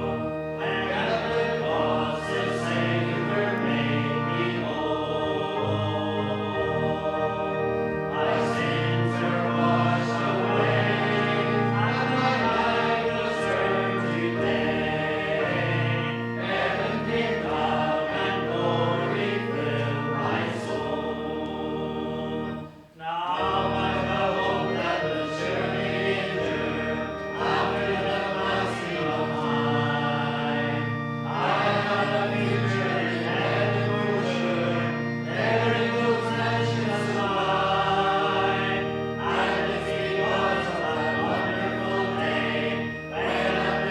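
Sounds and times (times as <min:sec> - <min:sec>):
congregation singing a hymn: 0:00.0 - 0:43.9.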